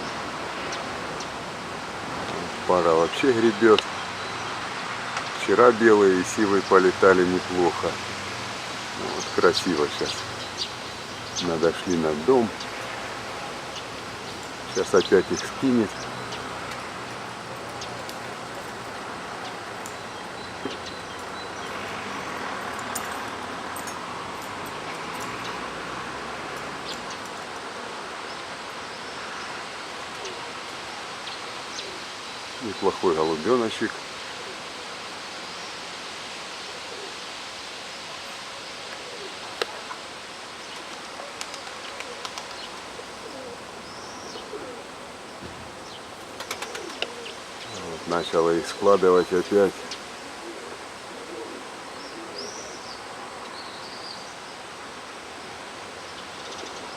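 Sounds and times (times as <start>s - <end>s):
pigeons cooing: 8.9s - 35.4s, 36.6s - 54.7s.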